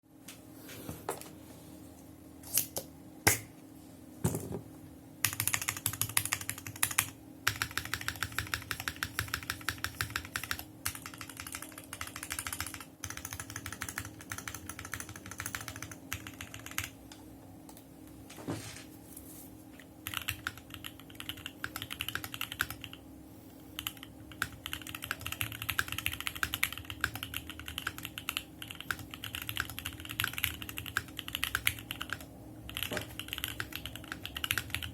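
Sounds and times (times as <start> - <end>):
mechanical keyboard typing: 5.2 - 17.0, 20.0 - 23.0, 23.8 - 34.9.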